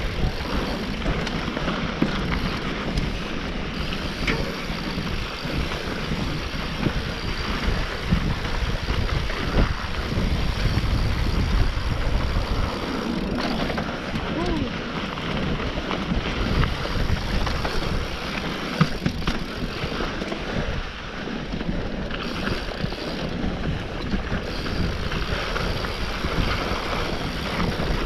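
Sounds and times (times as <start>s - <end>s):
bike knocks and rattles: 0.0s - 20.8s
tyres rolling over dirt: 0.0s - 28.0s
wind buffeting microphone: 0.0s - 28.0s.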